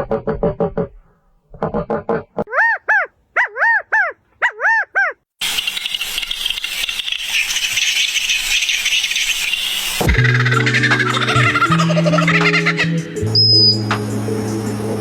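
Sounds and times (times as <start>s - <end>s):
animal high calls: 2.4s - 5.2s, 10.0s - 13.2s.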